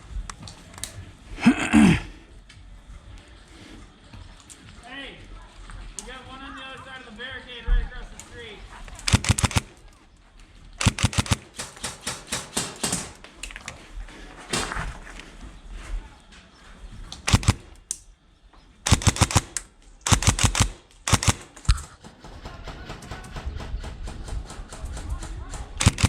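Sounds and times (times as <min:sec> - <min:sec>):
airsoft rifle bursts: 0:08.9 - 0:09.9, 0:10.8 - 0:13.2, 0:17.2 - 0:17.8, 0:18.8 - 0:22.1, 0:25.8 - 0:26.0.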